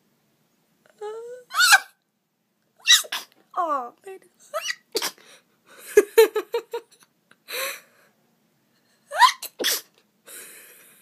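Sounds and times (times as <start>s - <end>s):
woman sneezing: 4.6s - 5.2s, 9.2s - 10.0s.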